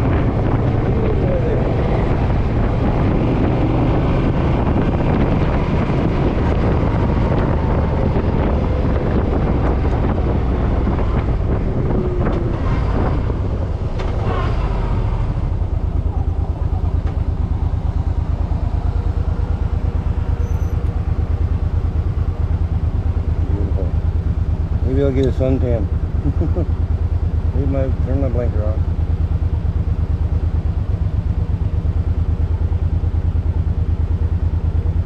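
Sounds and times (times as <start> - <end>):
wind on microphone: 0.0 - 24.0
motorcycle engine running: 0.0 - 35.0.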